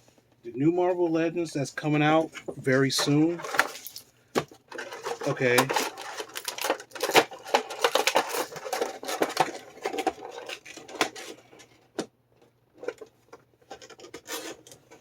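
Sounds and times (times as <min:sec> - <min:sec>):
plastic crinkling and clicking: 0:03.0 - 0:15.0.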